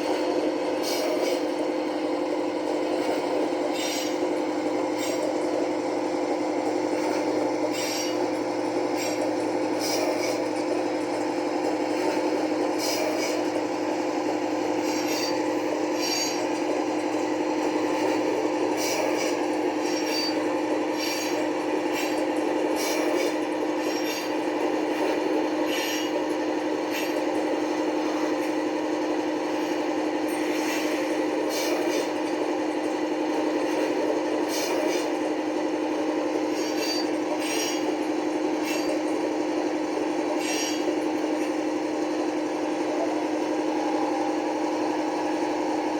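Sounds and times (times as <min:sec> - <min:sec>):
diesel engine hum from small speaker: 0:00.0 - 0:45.9
high-pitched scraping squeals: 0:03.7 - 0:04.2, 0:07.1 - 0:08.2, 0:14.8 - 0:16.4, 0:18.8 - 0:21.4, 0:25.7 - 0:26.2, 0:36.5 - 0:37.9.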